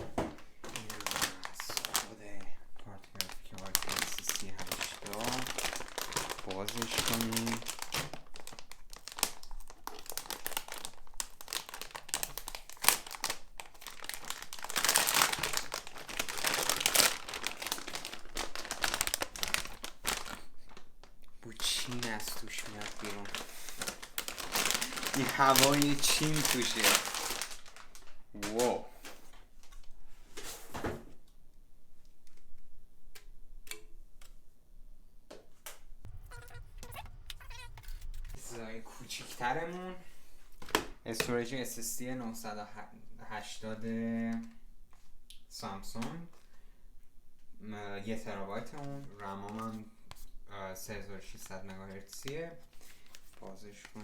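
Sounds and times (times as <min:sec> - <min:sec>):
packaging crinkling and rustling: 0:00.6 - 0:29.9, 0:51.3 - 0:54.0
low hum: 0:36.1 - 0:39.0.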